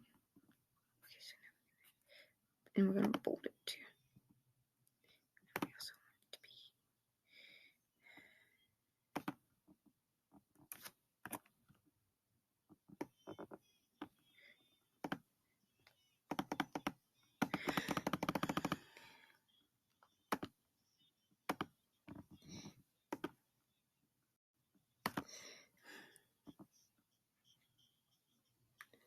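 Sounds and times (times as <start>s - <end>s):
typing on computer keyboard: 9.1s - 9.4s, 16.3s - 18.8s.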